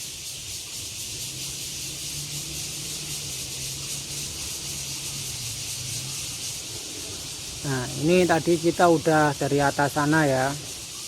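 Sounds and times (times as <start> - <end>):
high background hiss: 0.0 - 11.0.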